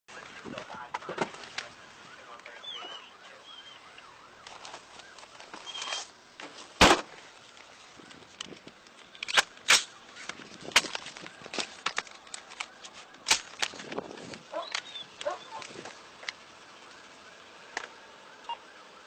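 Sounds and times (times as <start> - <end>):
police siren yelping: 1.1 - 6.0, 13.9 - 19.0
sharp bangs: 6.8 - 7.2.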